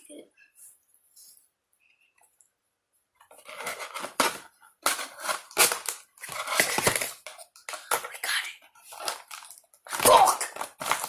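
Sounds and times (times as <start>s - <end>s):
rustling toy packaging: 3.3s - 11.0s.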